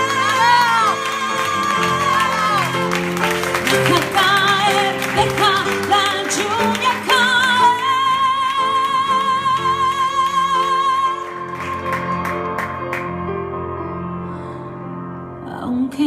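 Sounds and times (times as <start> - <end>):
woman singing with vibrato: 0.0 - 2.9, 3.6 - 11.5.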